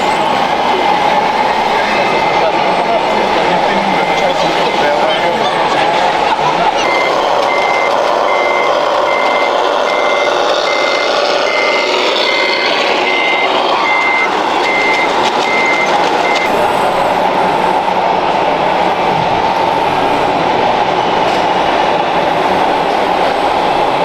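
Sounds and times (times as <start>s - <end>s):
steady background noise: 0.0s - 24.0s
reversing beeper: 6.6s - 17.9s.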